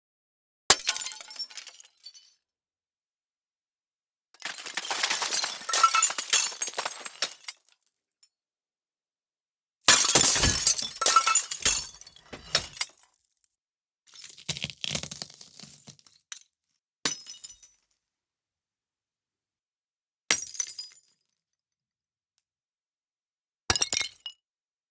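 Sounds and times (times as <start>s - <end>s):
glass breaking: 9.9s - 12.8s
glass shards tinkling: 9.9s - 12.8s.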